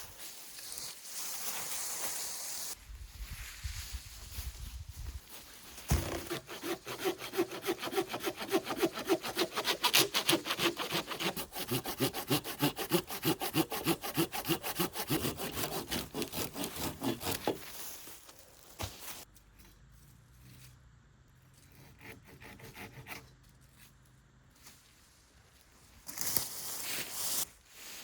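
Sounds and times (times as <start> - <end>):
hand saw cutting wood: 5.9 - 17.7, 21.7 - 23.3.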